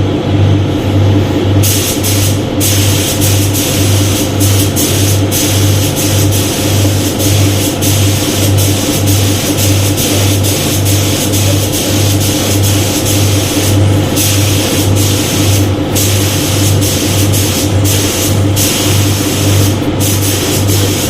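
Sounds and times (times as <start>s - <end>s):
low pulsing hum: 0.0s - 21.0s
spray gun hissing: 1.6s - 21.0s.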